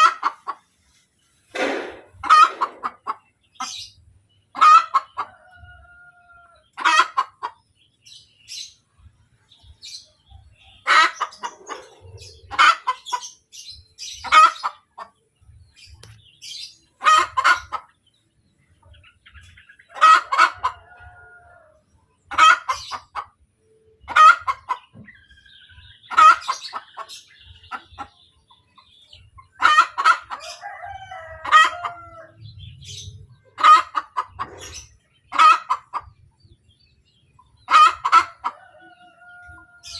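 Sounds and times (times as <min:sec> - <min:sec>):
hen cackling: 0:01.6 - 0:03.7, 0:10.8 - 0:13.3, 0:17.0 - 0:17.9, 0:19.9 - 0:23.3, 0:29.5 - 0:36.2, 0:37.7 - 0:39.9.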